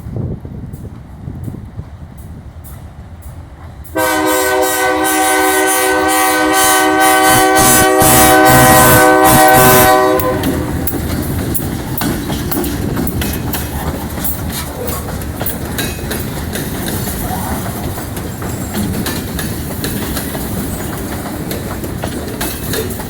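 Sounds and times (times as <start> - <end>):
train rumble and wheel clicks: 0.0 - 23.0
locomotive air horn blast: 3.9 - 10.9.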